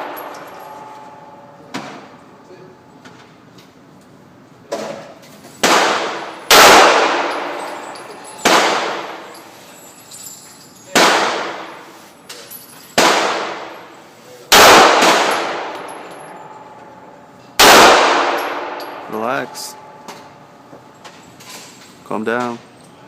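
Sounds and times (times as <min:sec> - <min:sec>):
gunshots with echo: 0:05.6 - 0:09.3, 0:11.0 - 0:11.7, 0:14.5 - 0:15.8, 0:17.6 - 0:19.8.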